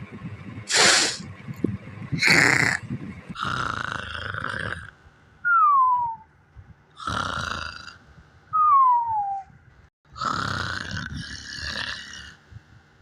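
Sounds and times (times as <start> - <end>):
cartoon snoring: 3.4 - 5.0, 7.0 - 8.0, 10.1 - 12.4
falling whistle: 5.5 - 6.2, 8.6 - 9.5.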